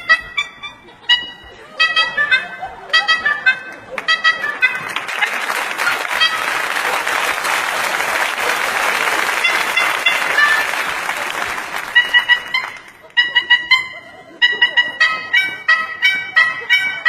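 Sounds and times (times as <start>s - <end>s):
short horn notes: 0.0s - 17.0s
audience applauding: 2.8s - 13.3s.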